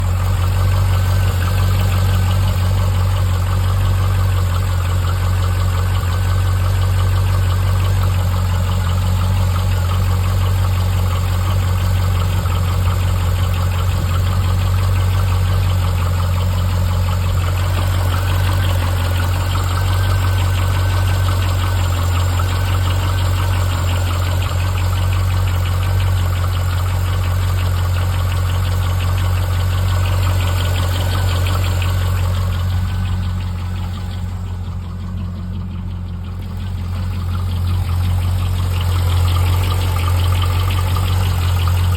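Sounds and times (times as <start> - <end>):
car engine idling: 0.0 - 41.9
rapid ticking knock: 17.4 - 41.9.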